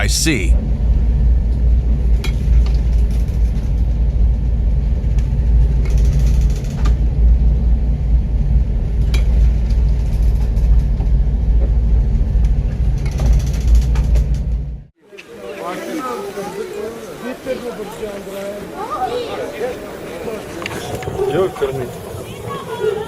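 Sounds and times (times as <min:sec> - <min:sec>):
ship low rumble: 0:00.0 - 0:14.9.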